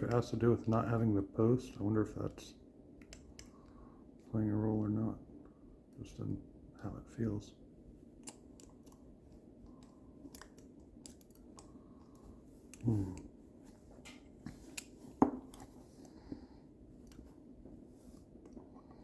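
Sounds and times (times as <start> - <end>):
lock picks scraping and ticking: 9.7 - 12.8.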